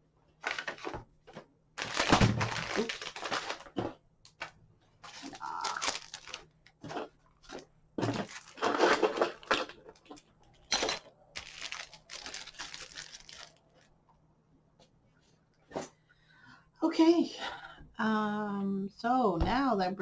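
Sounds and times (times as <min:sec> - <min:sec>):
packaging rustling and crinkling: 0:00.4 - 0:14.0.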